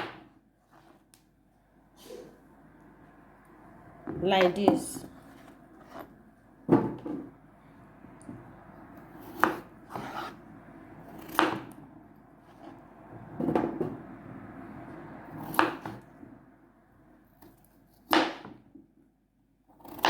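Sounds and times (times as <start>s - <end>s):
knife chopping potatoes: 9.1s - 10.4s, 11.1s - 11.8s, 15.4s - 16.1s, 17.4s - 18.7s, 19.7s - 20.0s.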